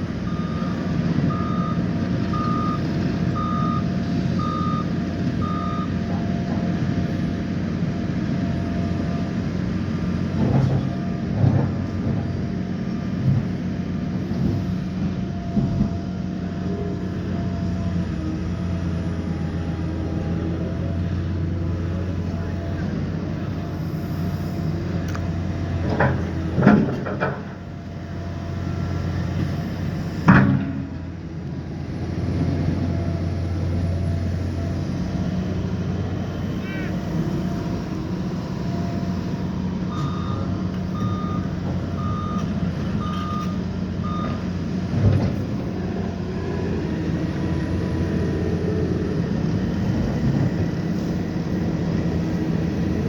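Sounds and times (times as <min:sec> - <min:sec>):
excavator diesel engine running: 0:00.0 - 0:53.0
reversing alarm beeping: 0:00.2 - 0:06.1, 0:36.4 - 0:44.6.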